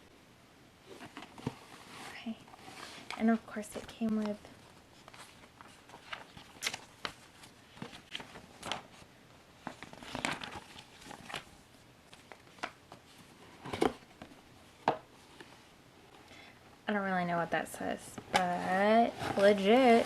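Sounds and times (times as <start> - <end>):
paper and plastic rustling: 0.9 - 14.4, 18.2 - 20.0.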